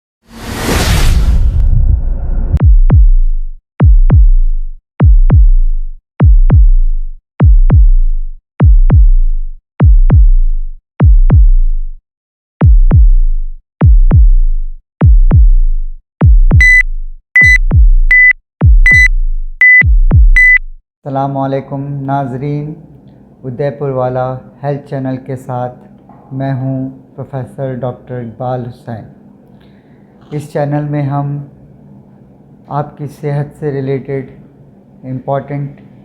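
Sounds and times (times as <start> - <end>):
drum-machine hit with synth sweep: 0.6 - 5.6, 19.9 - 20.6
short high beep: 16.6 - 16.8, 17.4 - 18.3.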